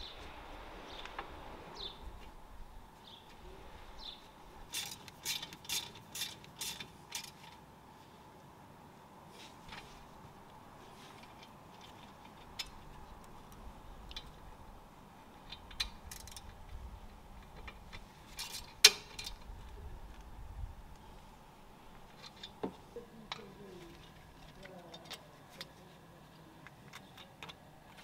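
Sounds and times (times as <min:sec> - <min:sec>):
hand tools clicking on metal: 0:04.7 - 0:07.6.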